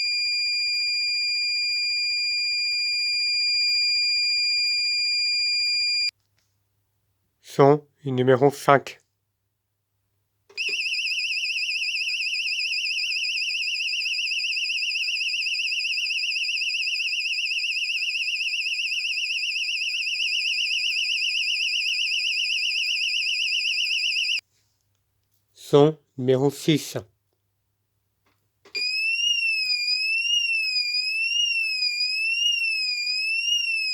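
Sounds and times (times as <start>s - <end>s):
high-pitched warbling alarm tone: 10.6s - 24.4s, 28.8s - 33.9s.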